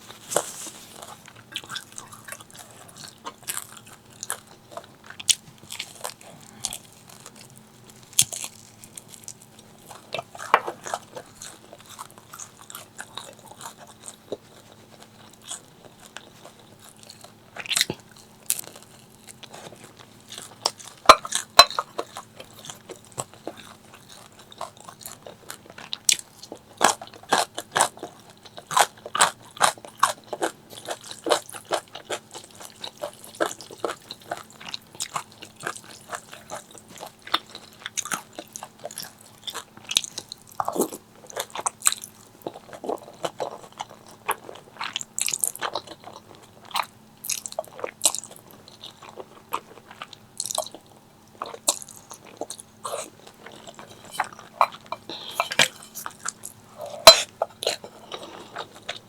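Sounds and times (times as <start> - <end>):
crunching bites and chewing: 0.1 - 59.0.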